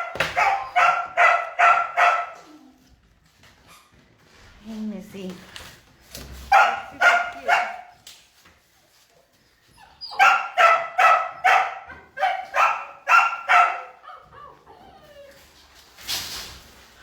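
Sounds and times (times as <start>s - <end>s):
dog barking: 0.0s - 2.6s, 6.5s - 8.0s, 10.1s - 14.2s.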